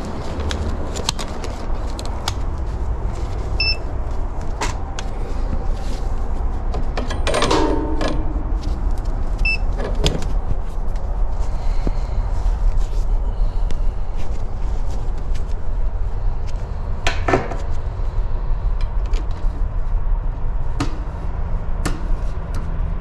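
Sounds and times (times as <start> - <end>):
steady low rumble: 0.0 - 23.0
handling clicks and knocks: 6.7 - 10.8.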